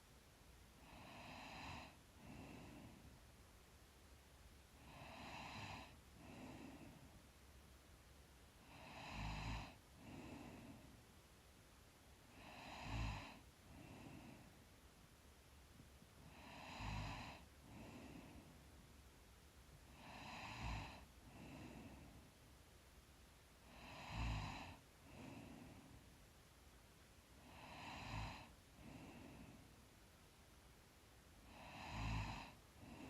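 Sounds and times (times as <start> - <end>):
woman breathing in sleep: 0.8 - 3.2, 4.8 - 7.2, 8.6 - 11.0, 12.3 - 14.7, 16.2 - 18.7, 19.9 - 22.4, 23.6 - 26.2, 27.4 - 29.9, 31.4 - 33.0.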